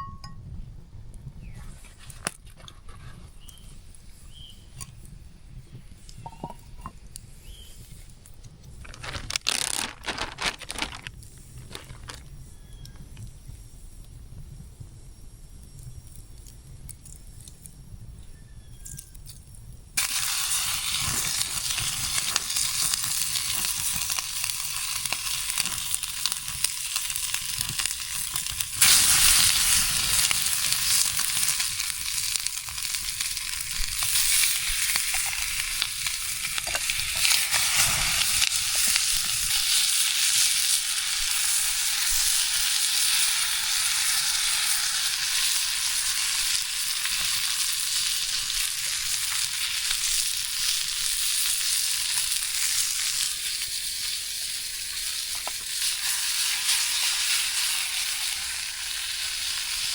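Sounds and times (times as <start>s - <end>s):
meat sizzling in a pan: 20.0s - 59.9s.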